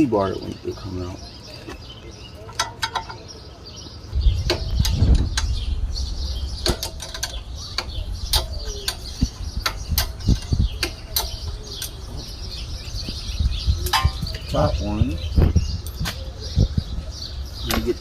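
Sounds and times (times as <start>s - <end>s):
birds chirping: 0.0s - 18.0s
low rumble: 4.0s - 18.0s
hand tools clicking on metal: 6.6s - 12.0s.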